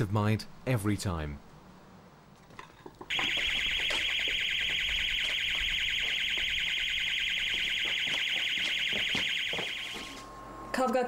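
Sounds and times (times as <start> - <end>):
pulsing electronic alarm: 3.1 - 10.3.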